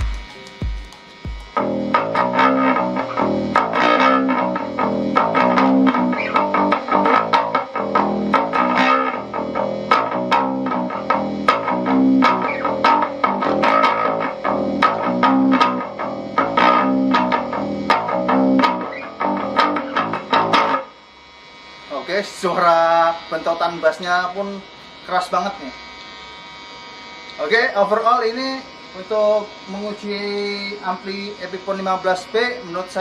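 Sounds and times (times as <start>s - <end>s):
electric bass guitar plucked: 1.5s - 20.9s.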